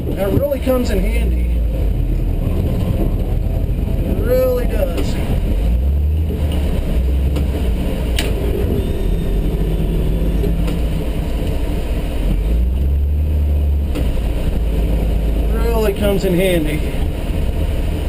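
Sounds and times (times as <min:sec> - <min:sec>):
engine running at low throttle: 0:00.0 - 0:18.0.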